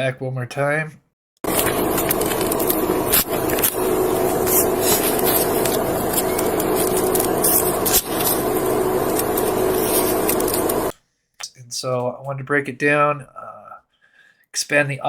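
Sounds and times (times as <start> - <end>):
low steady hum: 1.5 - 10.9.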